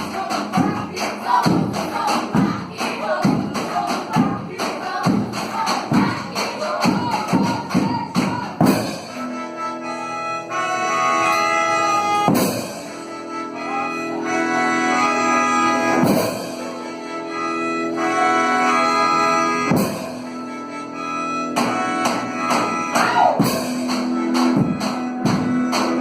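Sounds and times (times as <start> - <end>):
sustained brass-like chords: 8.6 - 26.0.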